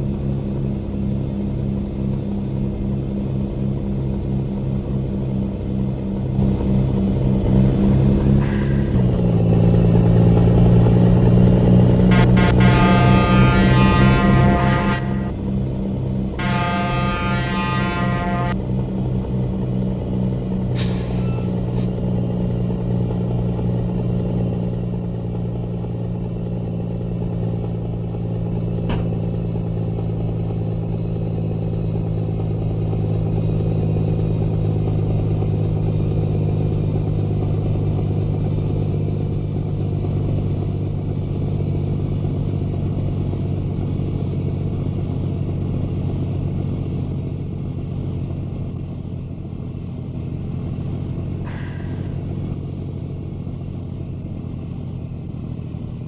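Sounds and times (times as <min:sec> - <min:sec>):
truck engine running: 0:00.1 - 0:19.0.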